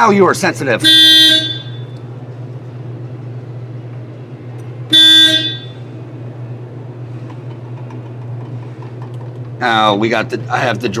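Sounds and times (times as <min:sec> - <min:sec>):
car horn blast: 0:00.8 - 0:02.0, 0:04.9 - 0:05.9.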